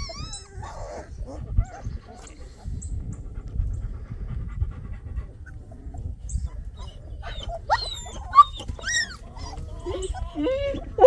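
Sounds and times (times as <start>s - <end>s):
dog whimpering: 0.0s - 2.3s, 6.4s - 11.0s
dog yelp: 6.8s - 11.0s.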